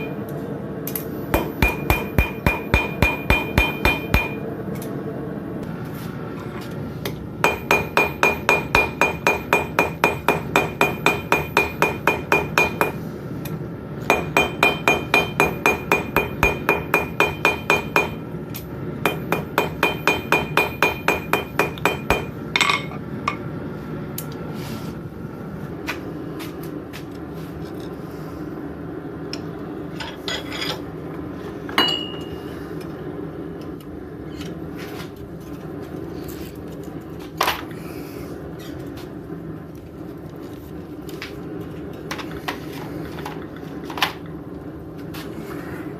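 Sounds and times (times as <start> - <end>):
steady low hum: 0.0 - 45.9
hammer blows ringing on anvil: 1.3 - 4.4, 7.4 - 13.0, 14.1 - 18.2, 19.0 - 22.9, 31.8 - 32.4.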